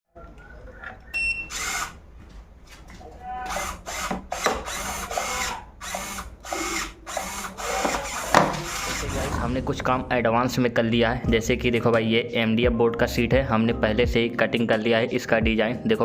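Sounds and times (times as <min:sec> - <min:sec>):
small motor whirring in bursts: 0:01.5 - 0:02.0, 0:03.5 - 0:09.0.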